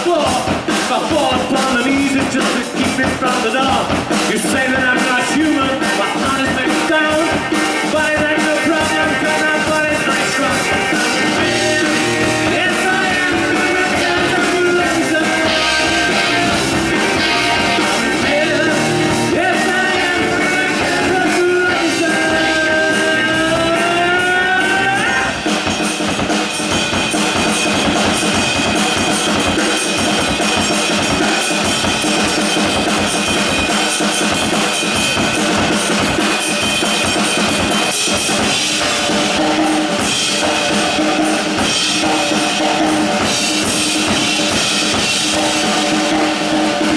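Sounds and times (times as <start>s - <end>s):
person singing: 0.0s - 25.6s
drum kit: 0.0s - 46.9s
guitar: 0.0s - 46.9s.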